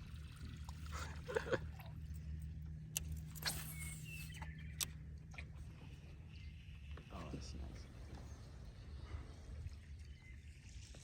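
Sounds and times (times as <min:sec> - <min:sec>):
small boat motor humming: 0:00.0 - 0:06.5.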